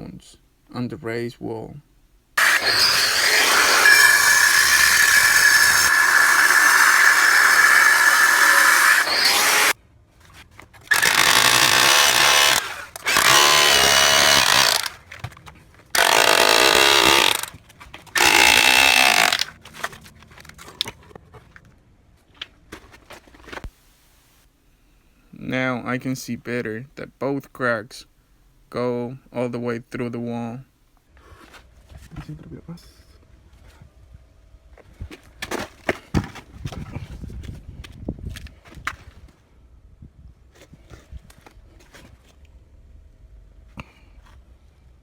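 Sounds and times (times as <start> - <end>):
rotary hammer chiselling concrete: 2.4 - 9.8, 10.9 - 15.0, 16.0 - 17.5, 18.2 - 19.5.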